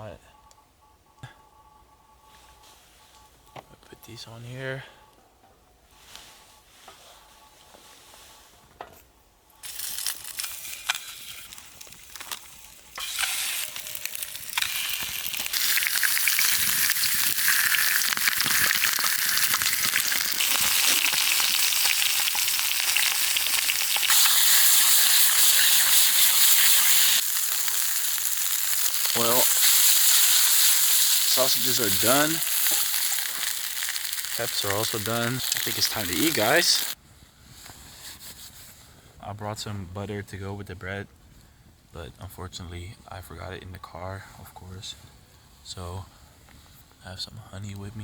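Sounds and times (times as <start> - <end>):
sausages sizzling in a pan: 9.6 - 37.0.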